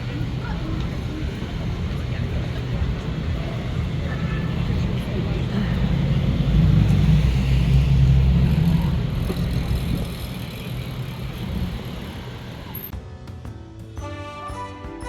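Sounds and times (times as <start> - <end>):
vehicle engine rumbling: 0.0 - 13.0
music: 12.9 - 15.0.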